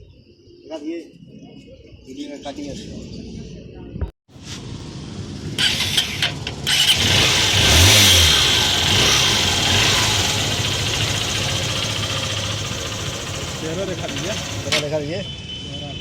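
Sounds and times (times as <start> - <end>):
motorcycle engine starting and running: 4.5 - 15.2.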